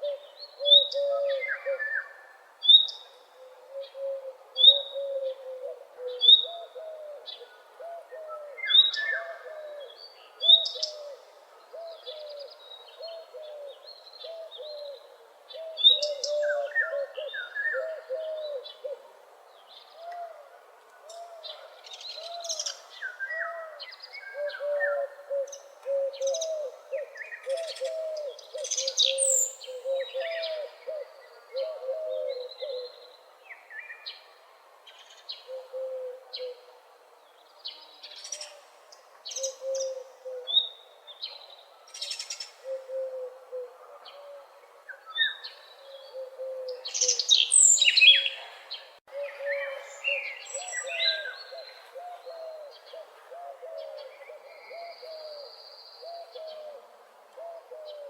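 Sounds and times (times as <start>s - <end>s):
birds chirping and trilling: 11.8s - 19.0s, 37.4s - 56.8s.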